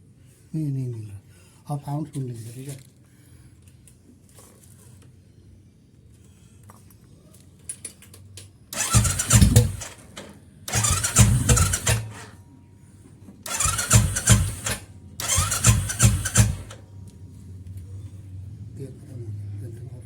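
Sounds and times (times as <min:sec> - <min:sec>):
motorcycle engine cranking: 0:08.8 - 0:12.4, 0:13.5 - 0:16.9.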